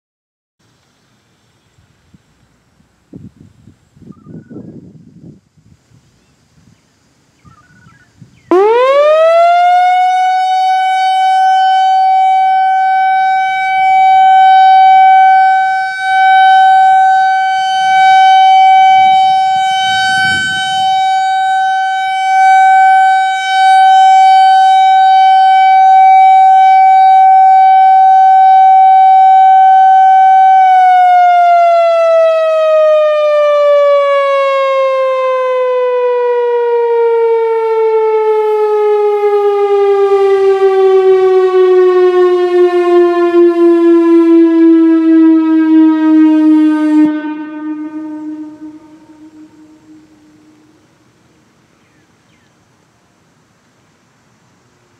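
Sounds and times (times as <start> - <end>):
outdoor warning siren: 8.5 - 51.3.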